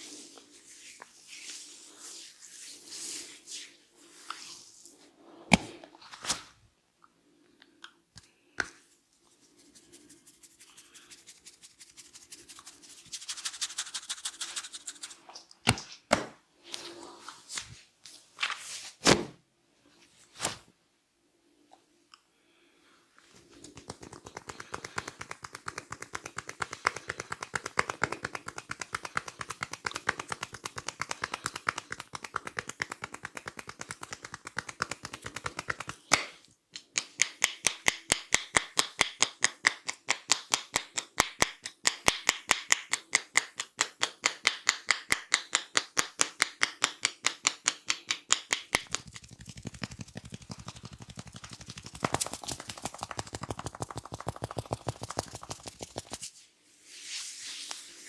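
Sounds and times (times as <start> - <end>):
hands slapping on a head: 23.5 - 56.3.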